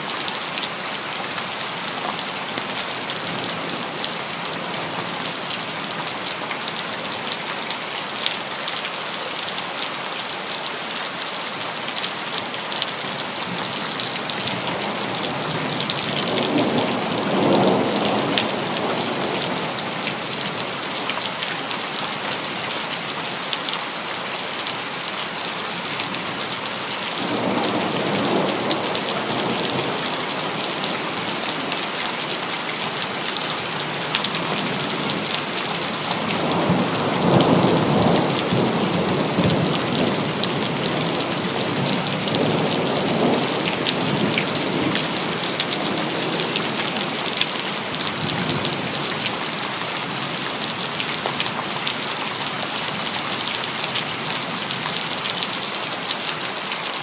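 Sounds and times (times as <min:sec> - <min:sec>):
heavy rain hissing: 0:13.0 - 0:50.7.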